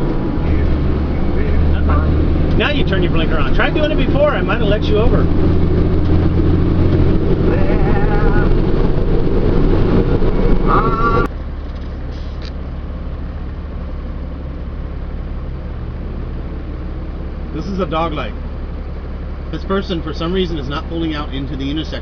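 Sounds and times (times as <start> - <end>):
truck engine drone in cab: 0.0 - 22.0
short wavering tones: 10.6 - 11.3.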